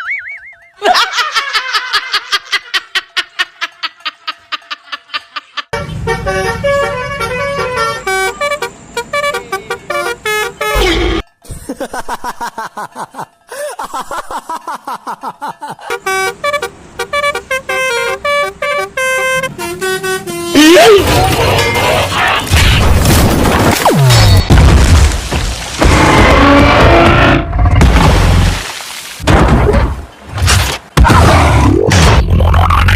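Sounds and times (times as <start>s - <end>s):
multi-tone bus horn: 5.7s - 11.4s, 15.8s - 21.8s, 25.9s - 27.7s.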